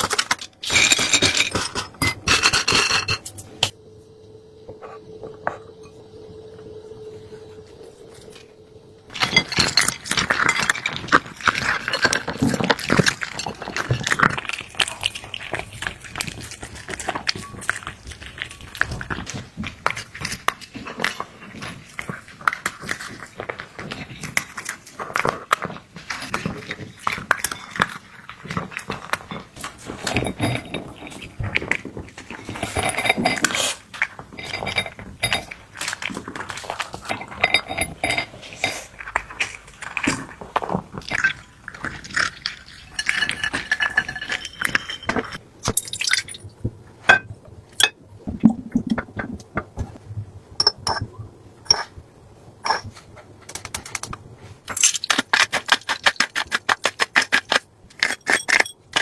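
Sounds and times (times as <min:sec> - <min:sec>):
utensils clinking against dishes: 0:00.0 - 0:03.7, 0:29.0 - 0:31.8, 0:32.4 - 0:40.2, 0:41.1 - 0:46.4, 0:57.3 - 0:59.0
liquid sounds: 0:38.0 - 0:52.0.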